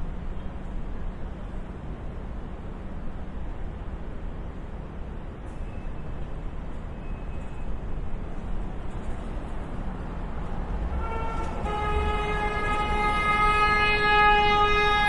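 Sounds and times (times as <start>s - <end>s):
city street traffic rumble: 0.0s - 15.0s
vehicle horn blast: 10.9s - 15.0s.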